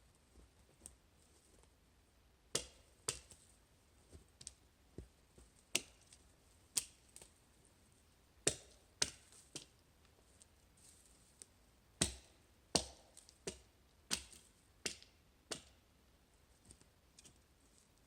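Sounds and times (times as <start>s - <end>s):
axe chopping wood: 2.5s - 3.2s, 8.5s - 9.2s, 12.0s - 13.6s.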